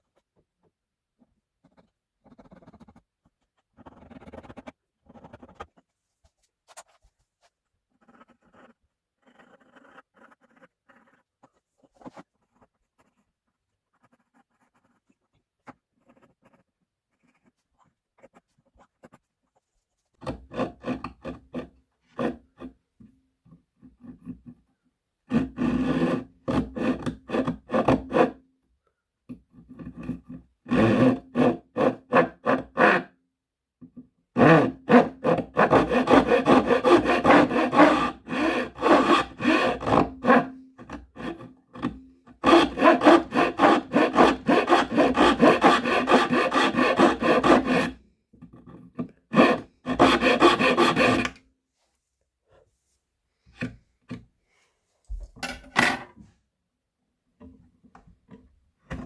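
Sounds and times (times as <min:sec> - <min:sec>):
hand tool rasping: 0:34.4 - 0:48.0, 0:49.3 - 0:51.4.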